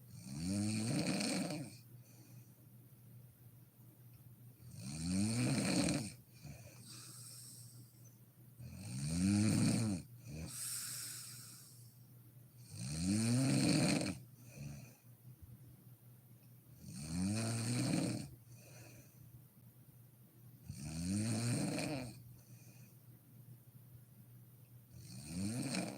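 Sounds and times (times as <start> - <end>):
woman snoring: 0.2 - 1.8, 4.7 - 7.8, 8.6 - 11.8, 12.6 - 14.8, 16.9 - 18.3, 20.7 - 22.2, 25.0 - 25.9
breathy exhales: 10.5 - 12.0.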